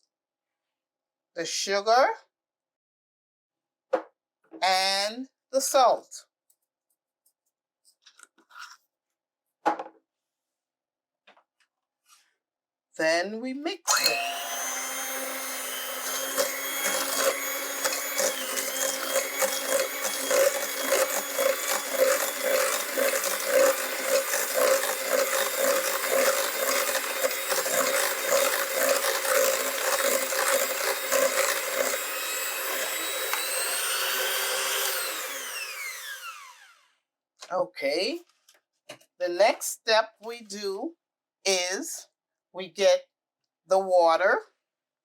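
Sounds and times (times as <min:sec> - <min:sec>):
electric mixer running: 0:13.9 - 0:36.9.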